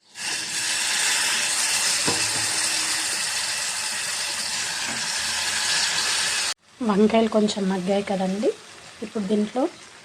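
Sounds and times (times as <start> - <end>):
vegetable pieces sizzling in hot oil: 0.0 - 10.0
knock: 2.0 - 2.5.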